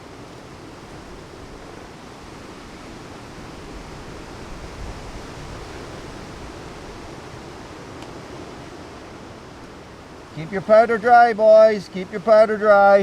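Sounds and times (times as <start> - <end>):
wind buffeting microphone: 0.0 - 10.3
wind and rain hiss: 0.0 - 13.0.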